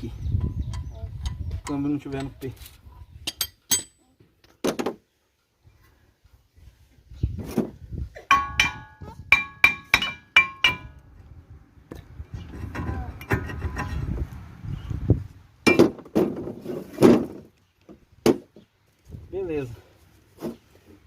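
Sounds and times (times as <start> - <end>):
steel tools striking metal: 3.3 - 4.0
metal scraping and rattling: 12.5 - 14.2.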